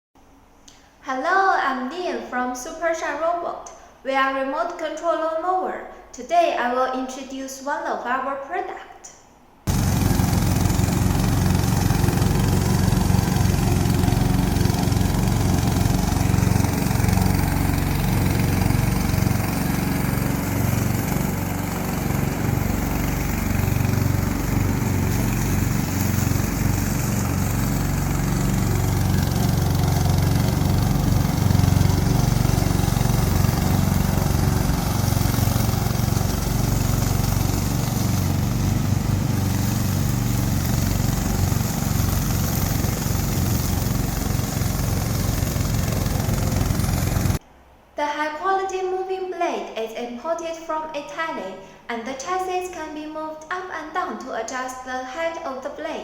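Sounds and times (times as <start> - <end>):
mower engine running: 9.7 - 47.4.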